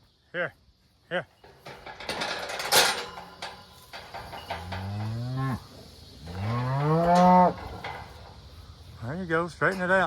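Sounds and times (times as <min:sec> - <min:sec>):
cattle mooing: 0:04.6 - 0:07.8.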